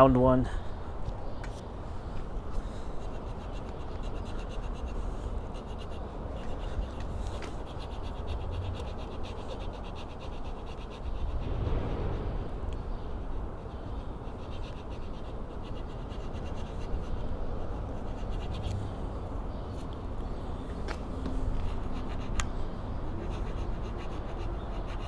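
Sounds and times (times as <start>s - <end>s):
metal file rasping on brake pad: 13.7s - 25.0s.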